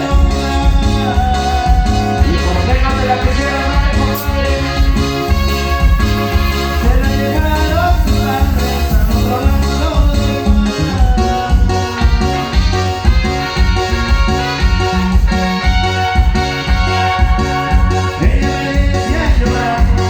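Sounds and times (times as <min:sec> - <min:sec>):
heavy pulsing bass beat: 0:00.0 - 0:15.8
band playing latin dance music: 0:00.0 - 0:20.0.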